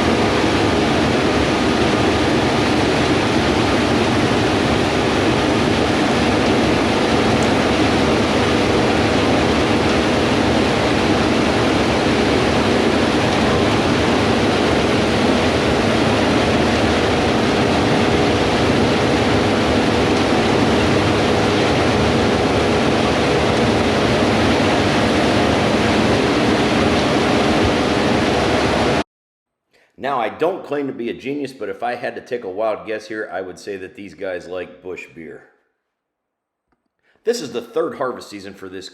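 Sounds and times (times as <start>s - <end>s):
combine harvester machine hum: 0.0s - 29.0s.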